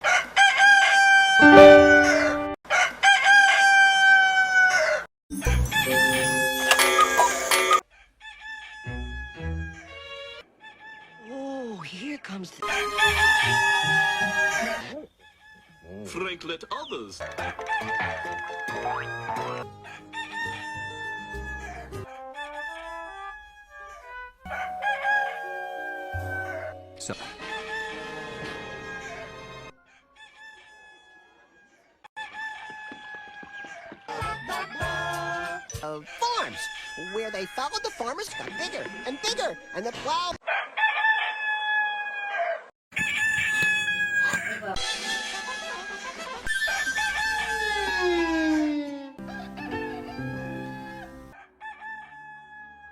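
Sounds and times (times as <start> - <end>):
rooster crowing: 0.0 - 5.1, 12.6 - 15.8, 19.8 - 26.8, 27.4 - 35.6, 38.3 - 52.9
background music: 1.4 - 2.6, 17.2 - 22.1, 24.5 - 29.7, 49.2 - 51.4
pitched sound: 1.4 - 2.6.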